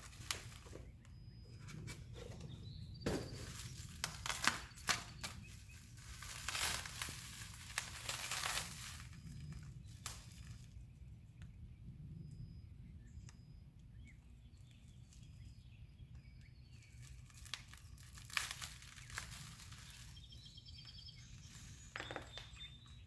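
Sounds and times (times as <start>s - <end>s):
faint bird chirps: 0.0s - 6.2s, 9.1s - 18.2s, 18.8s - 23.0s
cardboard box rustling and crinkling: 0.0s - 9.2s.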